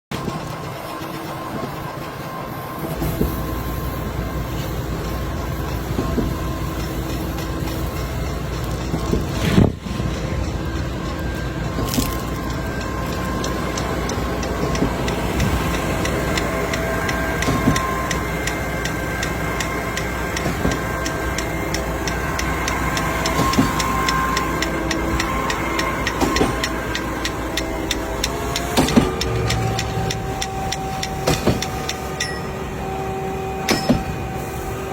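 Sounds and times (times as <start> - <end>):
mechanical rumble with held tones: 0.0 - 34.9
sharp knocks: 28.6 - 32.0.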